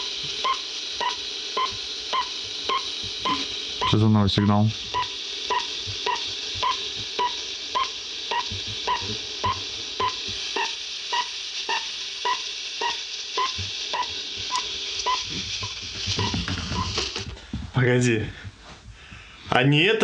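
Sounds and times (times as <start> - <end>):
short beeping pulses: 0.0 - 15.4
static hiss: 0.0 - 18.7.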